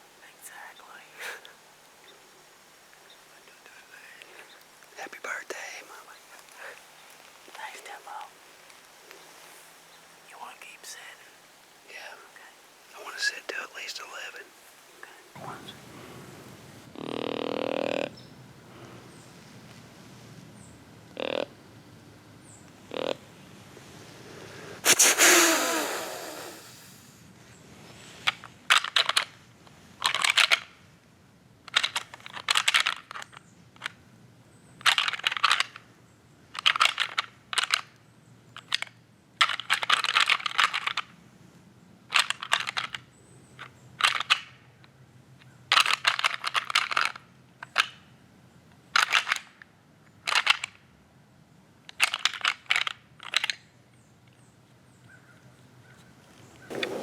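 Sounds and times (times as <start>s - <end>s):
rustling crash: 56.7s - 57.0s.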